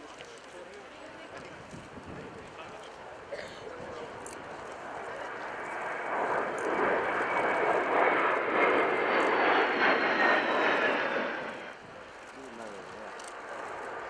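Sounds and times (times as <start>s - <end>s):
jet roar flying by: 5.1s - 12.0s.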